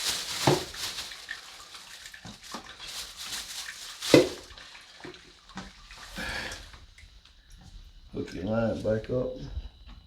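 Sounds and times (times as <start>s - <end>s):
rustling hiss: 0.0s - 4.6s
objects clattering into trash can: 0.0s - 5.7s.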